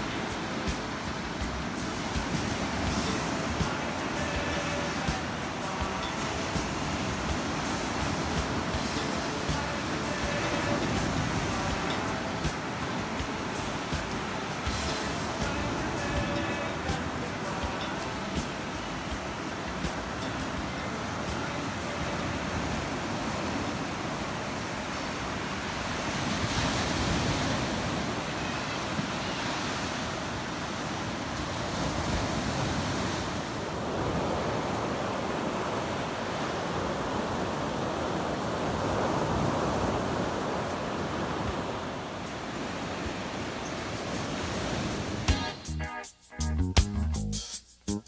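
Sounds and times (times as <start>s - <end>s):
music: 0.0s - 24.2s, 42.3s - 48.0s
sea surf washing on shore: 0.0s - 45.7s.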